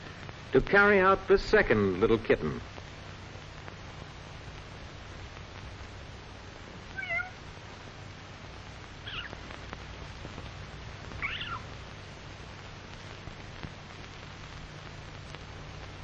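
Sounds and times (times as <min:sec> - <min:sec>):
film soundtrack hum and hiss: 0:00.0 - 0:16.0
kitten mewing: 0:07.0 - 0:07.4, 0:09.1 - 0:09.4, 0:11.2 - 0:11.7.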